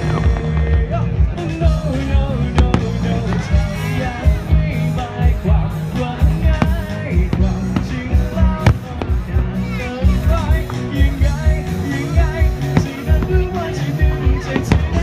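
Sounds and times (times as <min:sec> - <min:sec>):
loud music with heavy beat: 0:00.0 - 0:15.0
fireworks bursting: 0:02.6 - 0:04.2, 0:06.0 - 0:09.4, 0:11.8 - 0:15.0.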